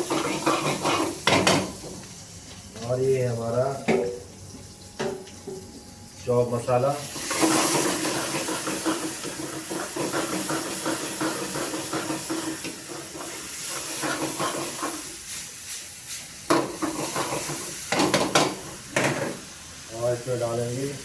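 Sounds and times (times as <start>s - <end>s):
spatula scraping pan: 0.0s - 1.8s
vegetables sizzling in hot oil: 0.0s - 21.0s
sharp knocks on pan: 16.5s - 19.4s.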